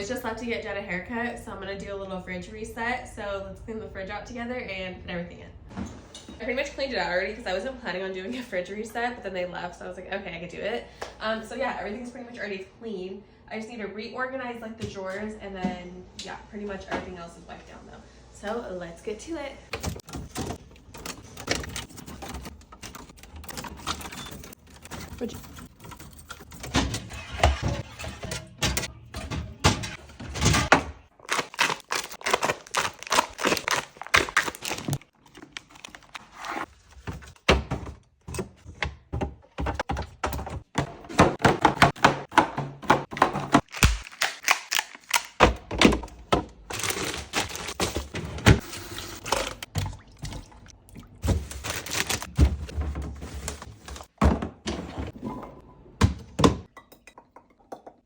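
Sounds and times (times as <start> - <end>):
containers clattering in fridge: 19.7 - 36.2, 36.9 - 44.0, 45.1 - 56.8.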